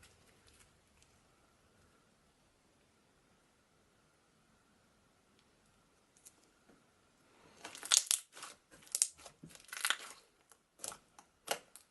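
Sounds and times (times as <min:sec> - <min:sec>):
slime being squeezed: 0:07.6 - 0:10.2.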